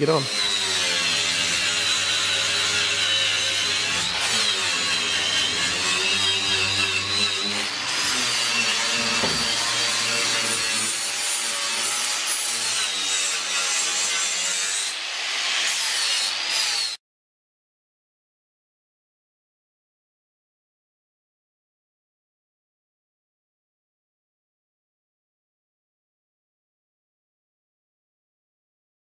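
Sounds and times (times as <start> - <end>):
angle grinder cutting steel: 0.0 - 17.0.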